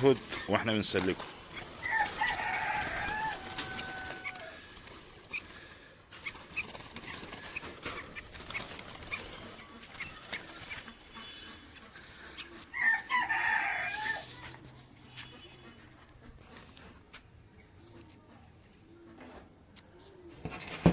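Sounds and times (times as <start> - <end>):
rooster crowing: 1.8 - 4.7, 12.7 - 14.4.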